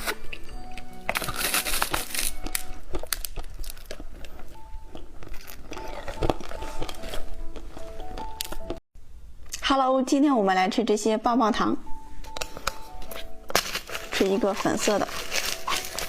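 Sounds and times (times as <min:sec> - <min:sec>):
plastic wrapper crinkling: 0:01.0 - 0:08.6, 0:12.3 - 0:16.0.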